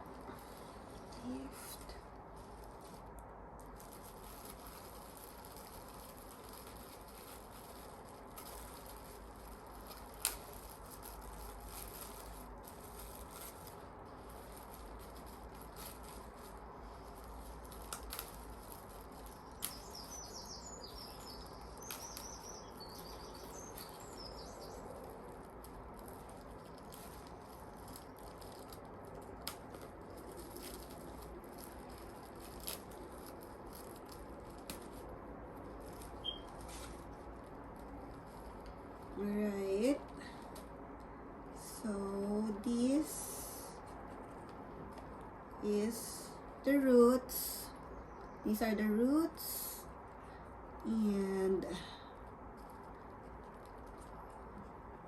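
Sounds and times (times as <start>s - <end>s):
moss and plastic rustling: 0.0s - 55.0s
faint high chirps: 36.2s - 36.6s.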